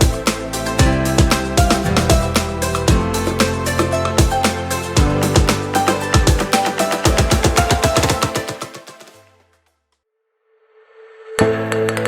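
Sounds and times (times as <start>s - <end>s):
electronic music with beat: 0.0s - 9.3s.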